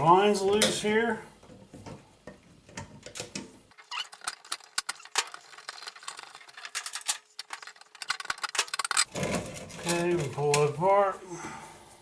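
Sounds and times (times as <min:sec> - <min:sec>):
metal fittings clicking and rattling: 0:03.0 - 0:10.6.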